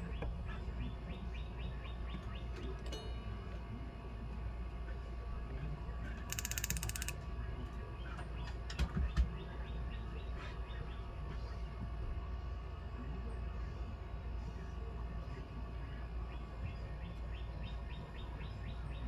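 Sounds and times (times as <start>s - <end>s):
fast train of clicks: 6.3s - 7.2s.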